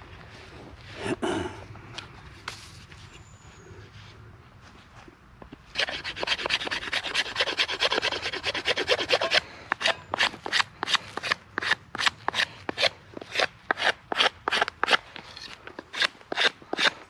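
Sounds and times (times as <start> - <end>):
hand saw cutting wood: 5.7 - 17.0.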